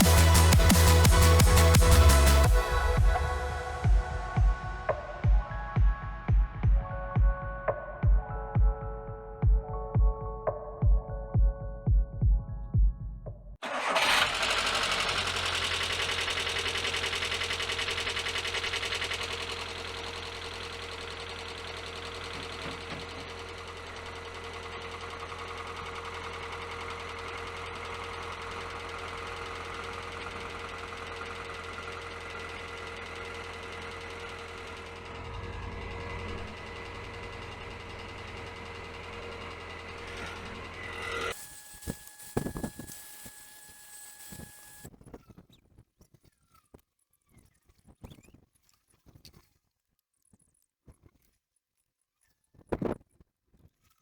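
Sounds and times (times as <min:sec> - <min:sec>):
race car engine starting and idling: 0:00.0 - 0:05.2, 0:13.6 - 0:41.4.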